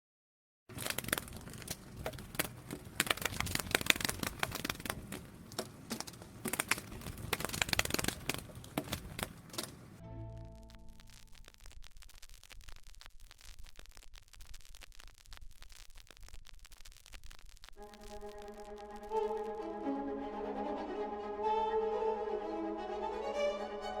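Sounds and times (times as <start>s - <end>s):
crinkling and crackling: 0.7s - 19.6s.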